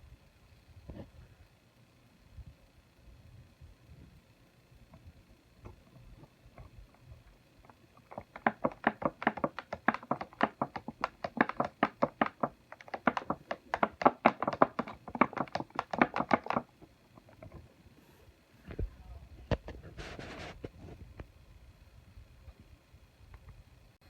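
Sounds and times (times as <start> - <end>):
rapid sharp taps and clicks: 7.6 - 17.6.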